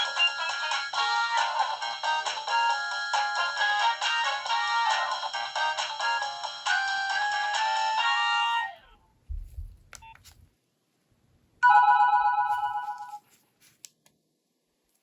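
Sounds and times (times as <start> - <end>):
polyphonic ringtone melody: 11.6 - 13.2.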